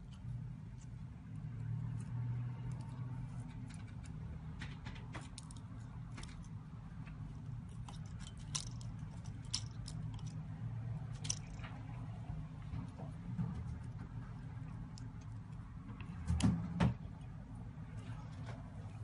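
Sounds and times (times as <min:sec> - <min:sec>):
steady low hum: 0:00.0 - 0:19.0
small tools clicking and tapping: 0:01.9 - 0:12.0.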